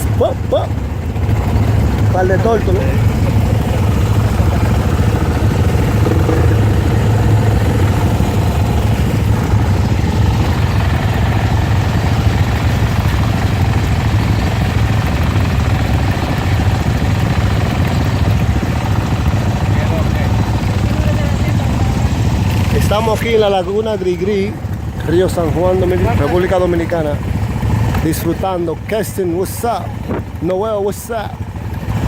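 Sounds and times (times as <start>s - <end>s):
vehicle engine running: 0.0s - 32.0s.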